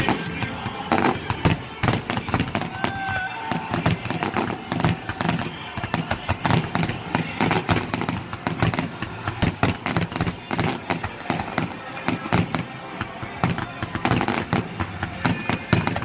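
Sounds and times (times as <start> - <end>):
fireworks bangs and crackling pops: 0.0 - 16.0.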